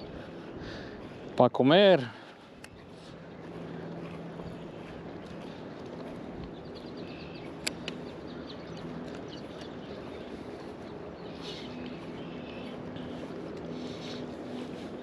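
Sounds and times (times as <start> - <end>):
wind: 0.0 - 15.0
sharp clicks: 7.6 - 8.1.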